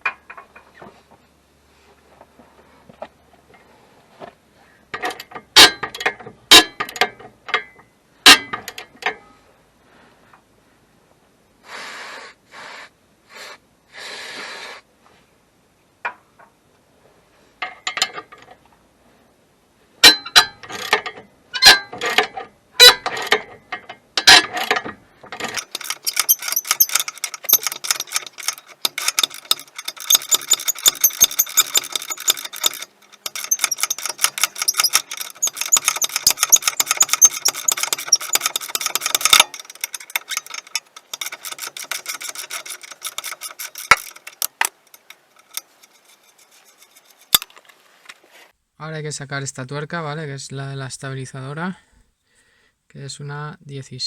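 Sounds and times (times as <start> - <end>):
metal tools clanking: 4.9 - 9.3, 20.0 - 47.6
socket ratchet clicking: 25.5 - 47.5.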